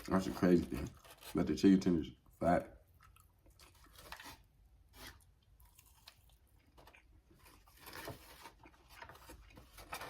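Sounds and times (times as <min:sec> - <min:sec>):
faint chewing: 0:02.2 - 0:10.0.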